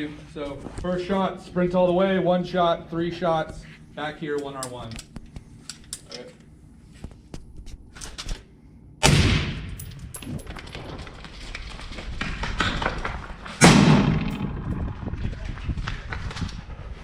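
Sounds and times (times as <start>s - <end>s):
echoing rifle shots: 9.0s - 9.9s, 13.6s - 15.0s.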